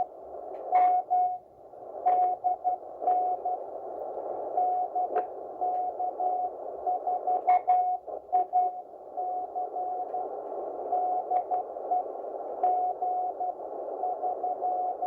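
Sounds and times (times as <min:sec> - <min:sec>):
radio band noise hiss: 0:00.0 - 0:15.0
static crackles: 0:00.0 - 0:15.0
morse code tone: 0:00.7 - 0:01.4, 0:02.1 - 0:03.6, 0:04.5 - 0:10.3.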